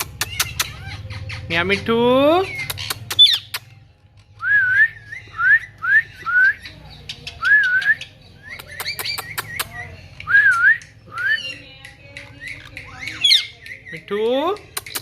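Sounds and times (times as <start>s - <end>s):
parrot sharp clicks: 8.6s - 9.8s, 14.7s - 15.0s.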